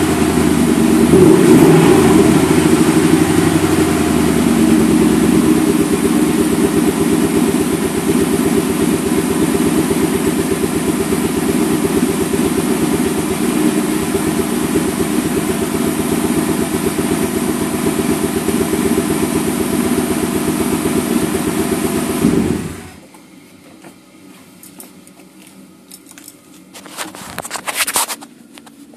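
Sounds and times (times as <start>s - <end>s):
car engine idling with misfire: 0.0s - 23.0s
rustling: 26.0s - 28.9s.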